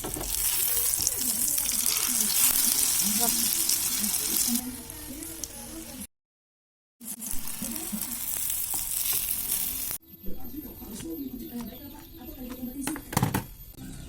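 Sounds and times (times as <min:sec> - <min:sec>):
egg frying in hot oil: 0:00.0 - 0:06.1, 0:07.0 - 0:10.0.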